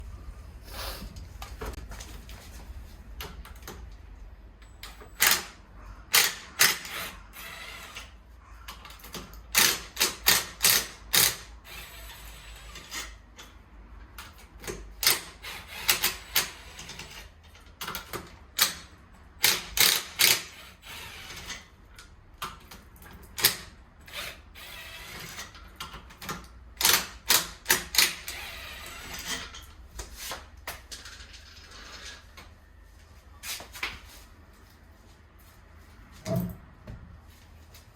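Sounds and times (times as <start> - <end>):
ratchet wrench clicking: 19.4 - 21.6.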